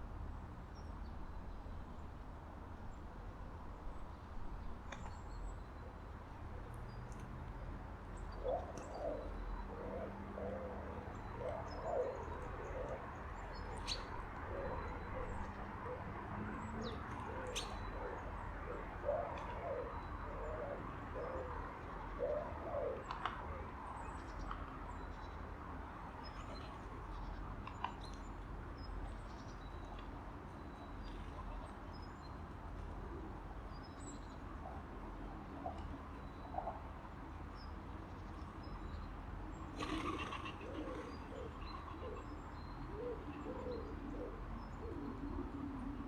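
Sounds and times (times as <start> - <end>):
pigeon cooing: 8.4 - 13.1, 14.4 - 16.2, 16.8 - 21.6, 22.2 - 23.1, 39.7 - 46.0.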